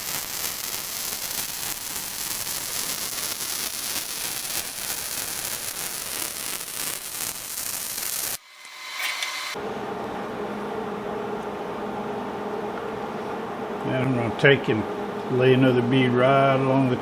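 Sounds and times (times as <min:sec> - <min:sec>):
welder arc crackling: 0:00.0 - 0:09.6.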